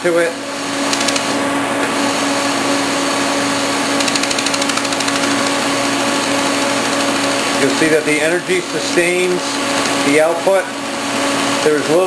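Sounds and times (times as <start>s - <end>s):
machine steady hum: 0.0s - 12.0s
laser welder rapid ticking: 0.9s - 1.3s, 4.0s - 5.6s.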